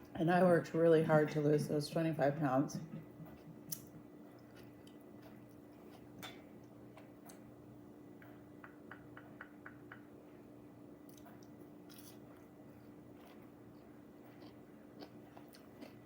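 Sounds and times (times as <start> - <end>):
faint steady hum: 0.0 - 16.0
person chewing: 3.2 - 7.6, 11.0 - 16.0.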